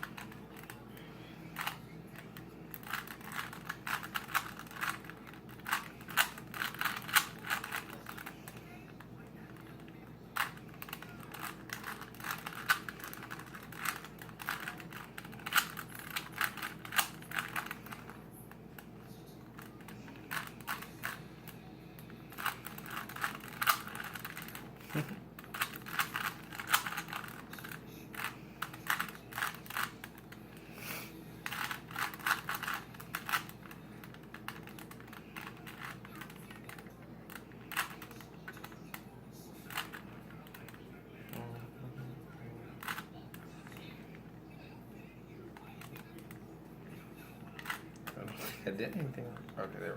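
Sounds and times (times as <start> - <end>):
puzzle cube clicking: 2.7 - 8.3, 10.4 - 18.1, 25.4 - 30.3.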